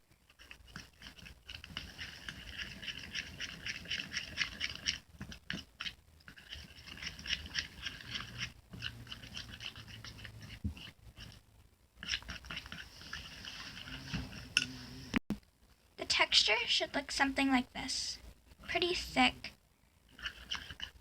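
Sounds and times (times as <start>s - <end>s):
spoon stirring sticky mixture: 0.2s - 15.2s, 18.6s - 19.4s, 20.0s - 21.0s.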